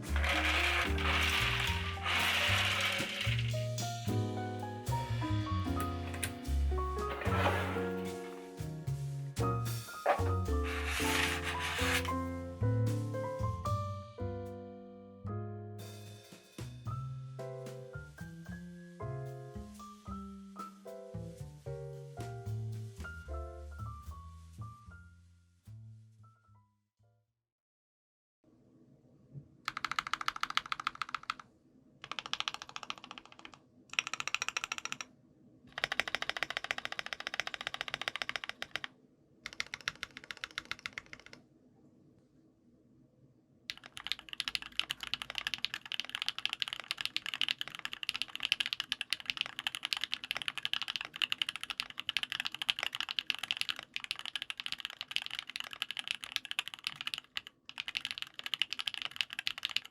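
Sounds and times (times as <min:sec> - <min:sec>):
typing on a keyboard: 0:00.1 - 0:03.6, 0:29.7 - 0:35.1, 0:35.7 - 0:41.4, 0:43.7 - 0:59.9.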